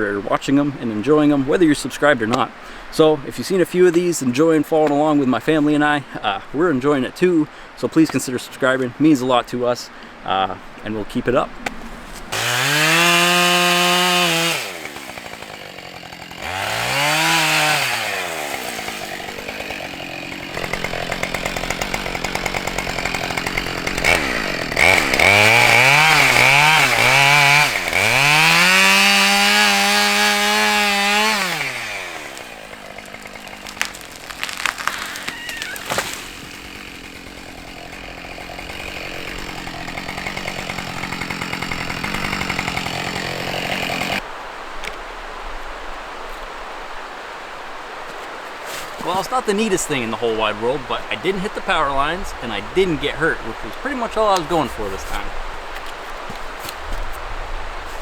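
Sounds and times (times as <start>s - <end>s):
sharp cracks: 11.6s - 44.2s
chainsaw revving and cutting wood: 12.1s - 44.3s, 49.0s - 56.0s
chainsaw idling: 12.3s - 44.2s, 49.0s - 55.5s.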